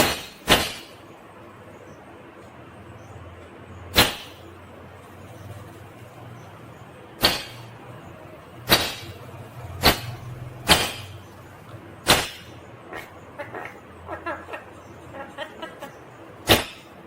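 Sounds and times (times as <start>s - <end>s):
sharp loud cracks: 0.0s - 1.0s, 3.9s - 4.4s, 7.2s - 7.7s, 8.7s - 9.2s, 9.8s - 11.2s, 12.0s - 12.6s, 16.4s - 17.0s
steady low hum: 0.0s - 17.0s
parakeet chirping: 8.8s - 17.0s.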